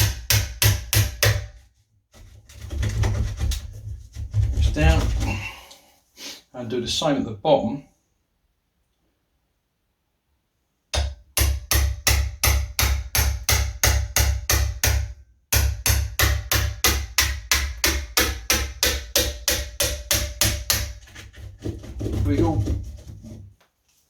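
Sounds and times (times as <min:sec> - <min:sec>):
hammer striking wood chisel: 0:00.0 - 0:01.6, 0:10.9 - 0:21.4.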